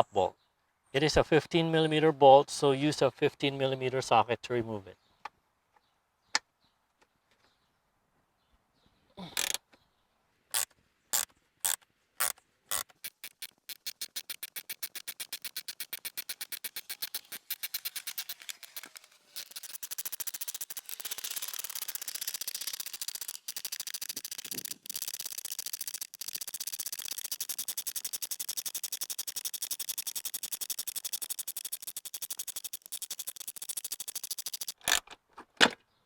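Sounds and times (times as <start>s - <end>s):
socket ratchet clicking: 9.4s - 9.6s, 10.5s - 35.0s.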